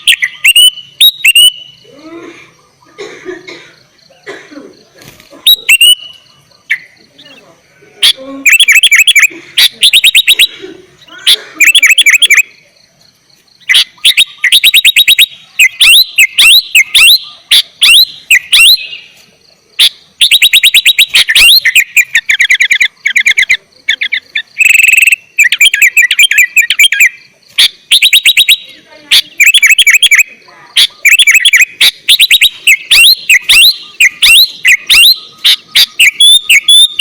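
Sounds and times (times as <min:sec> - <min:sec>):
bulbul singing chattering notes: 0:00.0 - 0:02.0, 0:02.7 - 0:37.0.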